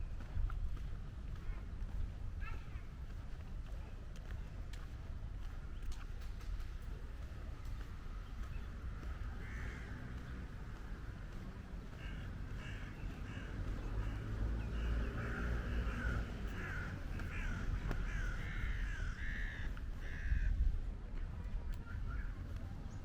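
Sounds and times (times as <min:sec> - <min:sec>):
steady low rumble: 0:00.0 - 0:23.0
harsh crow-like bird calls: 0:09.0 - 0:11.1, 0:11.7 - 0:20.7.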